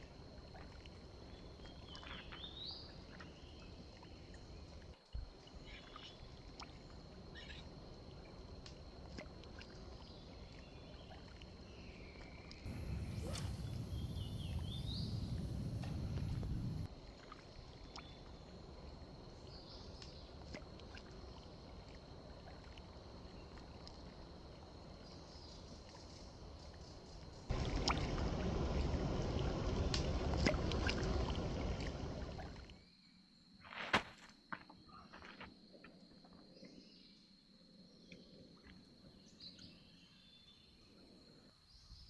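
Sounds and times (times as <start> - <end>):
chirps: 10.0 - 16.9
steady high whine: 12.6 - 16.9, 27.5 - 32.7
loud rushing rumbling noise: 12.7 - 16.9, 27.5 - 32.6.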